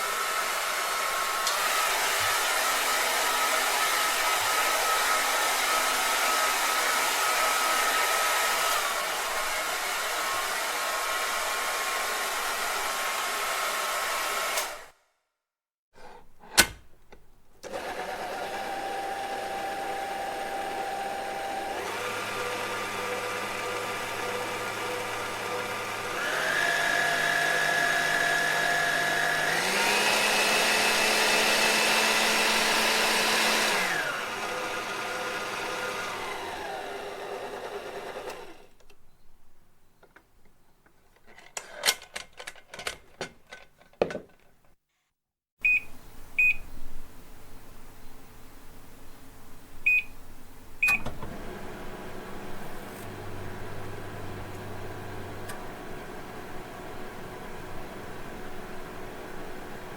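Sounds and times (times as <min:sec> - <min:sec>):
electric blender running: 0:00.0 - 0:14.9, 0:17.7 - 0:38.7, 0:51.2 - 0:59.9.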